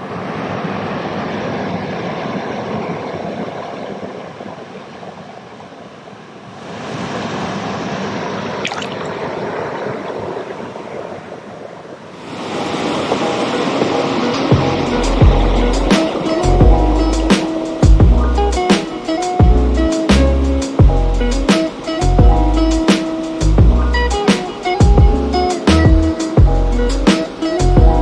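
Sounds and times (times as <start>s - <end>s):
stream gurgling over rocks: 8.4s - 17.6s.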